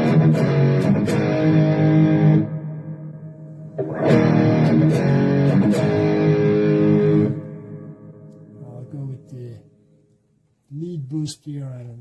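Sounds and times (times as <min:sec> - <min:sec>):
distorted electric guitar chords: 0:00.0 - 0:08.6.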